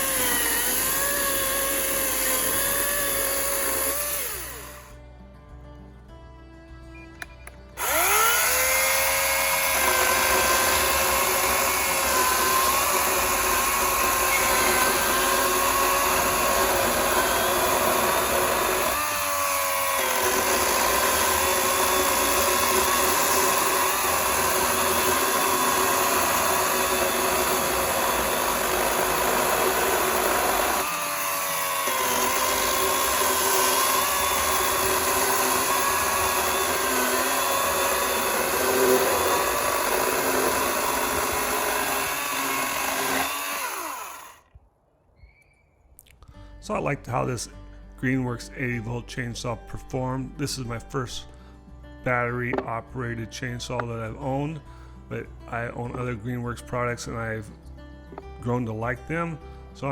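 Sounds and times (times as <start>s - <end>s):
electric chainsaw whine: 0.0s - 5.0s, 7.2s - 44.5s.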